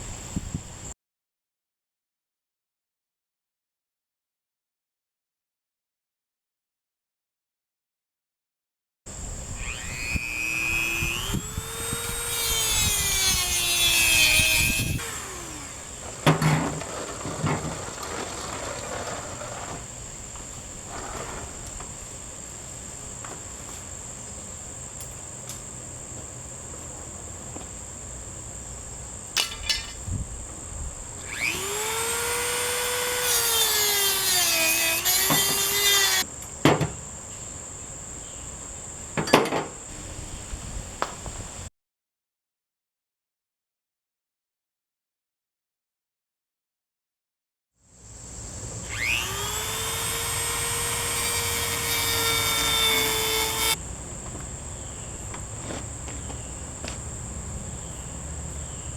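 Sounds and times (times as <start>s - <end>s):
power saw cutting: 9.5s - 20.0s, 31.2s - 36.3s, 48.8s - 53.8s.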